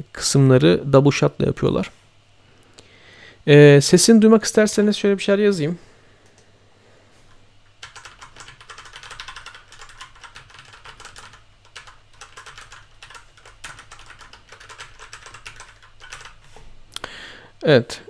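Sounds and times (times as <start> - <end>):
fast typing on mechanical keyboard: 7.8 - 16.6.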